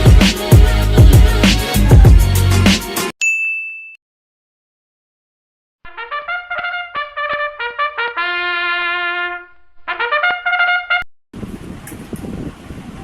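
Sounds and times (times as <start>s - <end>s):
trumpet playing: 5.9s - 11.1s.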